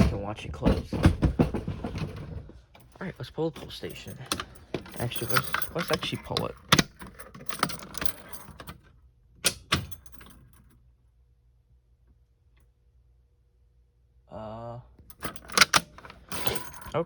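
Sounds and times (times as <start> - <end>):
fire alarm handle clacking: 3.6 - 8.7, 15.1 - 16.9.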